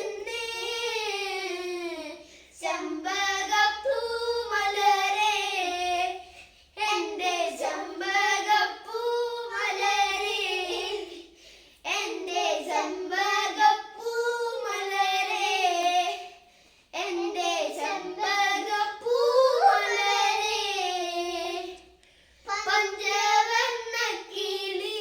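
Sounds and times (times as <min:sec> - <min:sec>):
children singing unaccompanied: 0:00.0 - 0:25.0.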